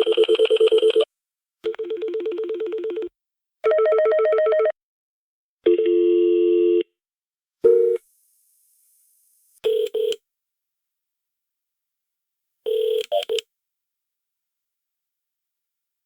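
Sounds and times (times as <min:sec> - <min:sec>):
steady dial tone: 0:07.6 - 0:10.2.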